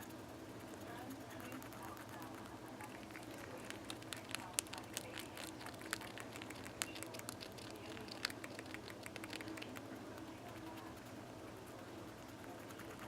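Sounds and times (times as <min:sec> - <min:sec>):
rat teeth grinding clicks: 0:02.9 - 0:09.8.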